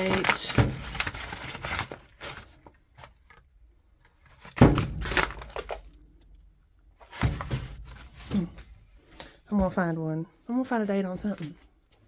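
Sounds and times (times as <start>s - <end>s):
knocks and crunching of debris: 4.2s - 6.0s.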